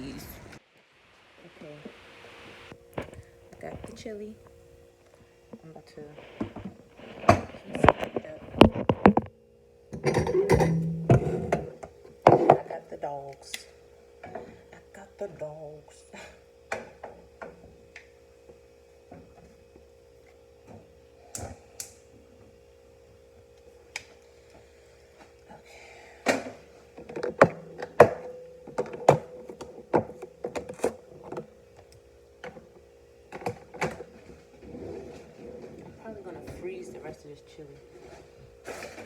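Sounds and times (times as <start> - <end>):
steady hum: 0.0 - 39.0
utensils and containers clattering: 10.0 - 12.7.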